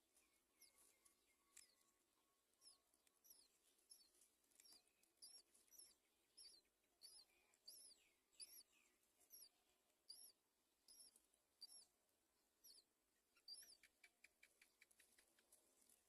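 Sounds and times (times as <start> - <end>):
nestling birds begging calls: 2.6 - 9.5, 10.1 - 11.9.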